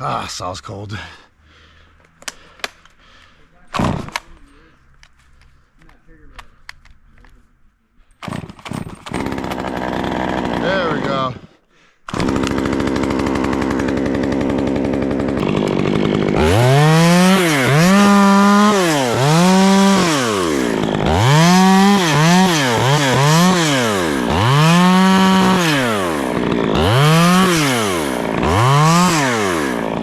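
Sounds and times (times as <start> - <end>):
chainsaw idling and revving: 8.3 - 11.5, 12.1 - 30.0.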